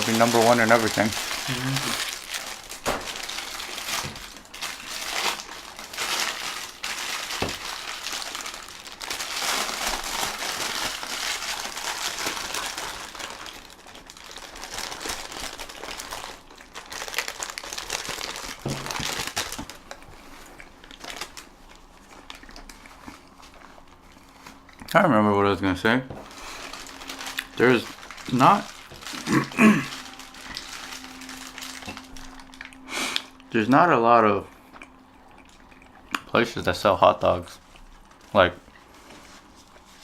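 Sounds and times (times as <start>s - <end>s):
paper wrappers crinkling: 0.0s - 24.7s, 26.1s - 34.3s, 35.3s - 40.0s.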